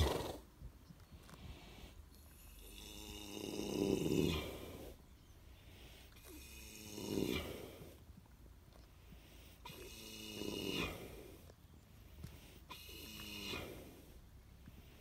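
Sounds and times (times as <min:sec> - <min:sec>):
horse snoring: 0:02.3 - 0:05.0, 0:06.2 - 0:07.9, 0:09.6 - 0:11.4, 0:12.7 - 0:14.1.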